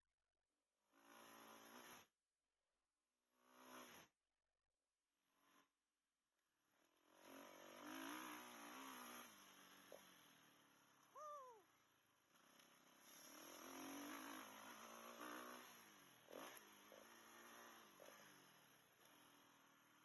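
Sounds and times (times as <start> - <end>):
engine running and revving: 0.9 - 2.1, 3.3 - 4.2, 5.2 - 5.8, 6.6 - 11.5, 12.2 - 20.0.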